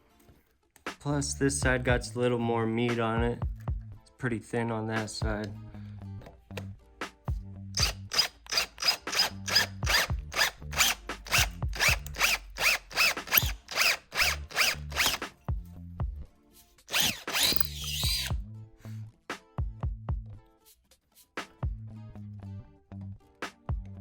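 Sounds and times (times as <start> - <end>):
power drill boring into metal: 7.8 - 15.2, 16.9 - 18.3.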